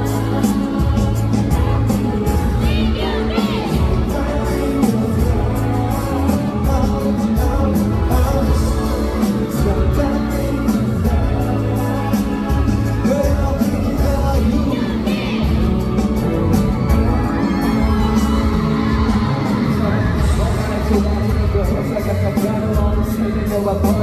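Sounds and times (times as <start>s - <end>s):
pop hip-hop music with singing: 0.0s - 24.0s.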